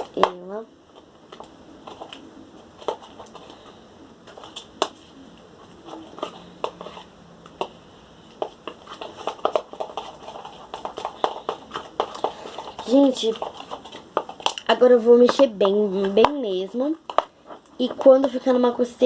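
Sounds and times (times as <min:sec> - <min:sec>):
slime stirred in a bowl: 0:00.0 - 0:19.0.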